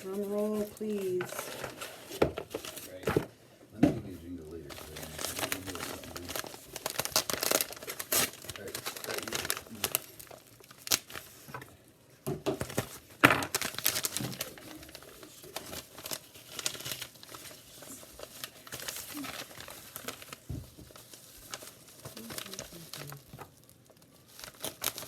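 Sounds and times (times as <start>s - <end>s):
packaging torn and crinkled: 4.6s - 11.5s, 12.6s - 25.0s.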